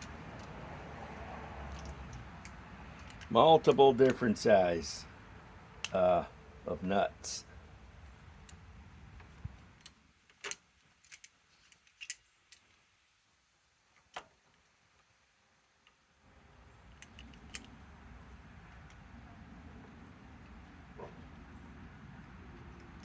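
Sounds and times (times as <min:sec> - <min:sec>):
faint low hum: 0:16.3 - 0:23.0.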